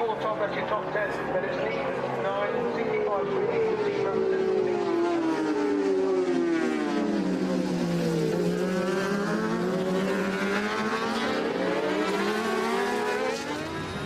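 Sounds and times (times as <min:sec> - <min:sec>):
wind and road noise: 0:00.0 - 0:14.0
motorcycle engine revving: 0:03.4 - 0:14.0.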